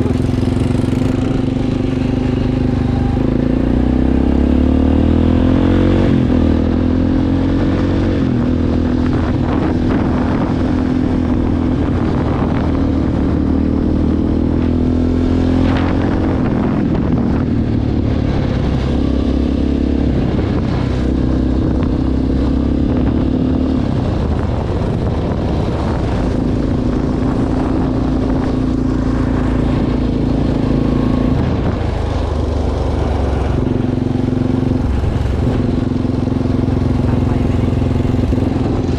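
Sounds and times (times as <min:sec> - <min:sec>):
rumbling and rattling from riding: 0:00.0 - 0:03.3, 0:15.6 - 0:38.9
all-terrain vehicle engine running: 0:00.0 - 0:38.9.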